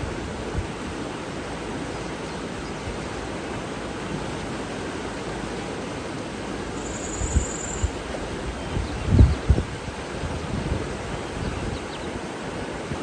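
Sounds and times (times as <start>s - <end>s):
wind buffeting microphone: 0.0s - 1.0s, 7.1s - 13.0s
water rushing: 0.0s - 13.0s.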